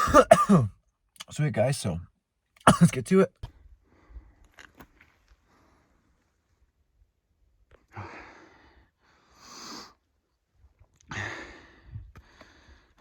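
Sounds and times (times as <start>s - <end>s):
man breathing hard: 7.9s - 10.0s, 11.1s - 13.0s.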